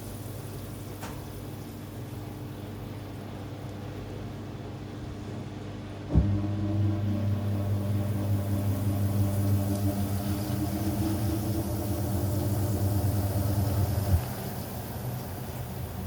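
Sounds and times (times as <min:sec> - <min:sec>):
washing machine motor hum: 0:00.0 - 0:16.0
washing machine clunk: 0:06.1 - 0:14.4.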